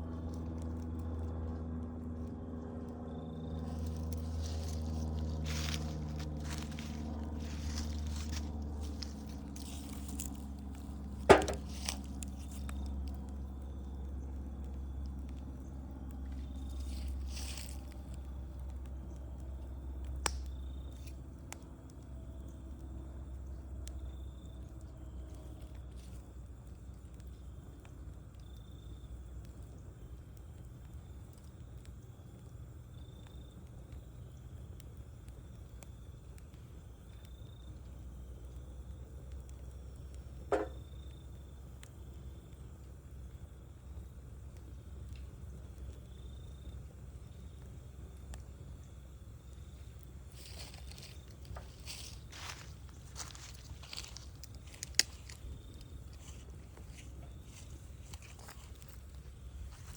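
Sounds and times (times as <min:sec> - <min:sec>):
low hum: 0:00.0 - 0:31.7
wood fire crackling: 0:00.0 - 0:59.9
loud sharp pop: 0:11.3 - 0:11.8.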